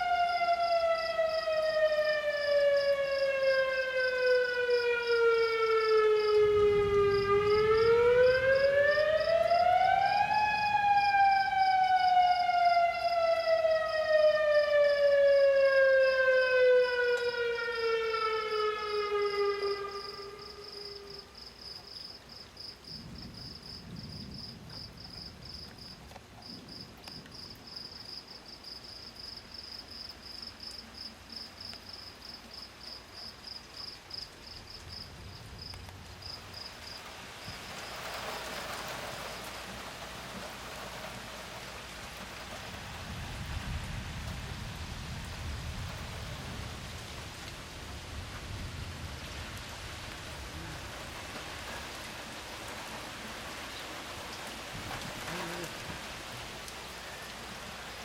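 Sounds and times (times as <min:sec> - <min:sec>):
low thunder rumbling: 0:00.0 - 0:21.1, 0:22.8 - 0:27.8, 0:42.3 - 0:53.3
insects chirping: 0:00.0 - 0:41.6
rain falling: 0:00.0 - 0:58.0.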